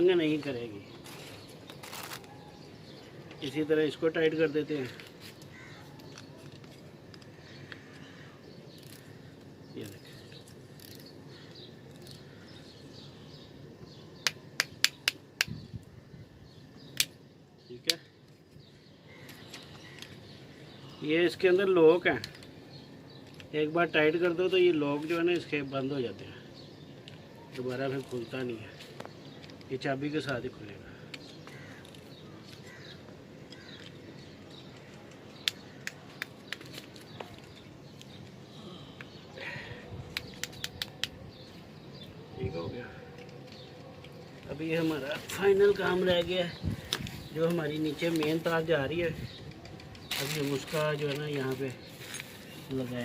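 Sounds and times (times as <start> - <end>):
plastic connectors clicking: 33.5 - 38.4, 40.1 - 41.2.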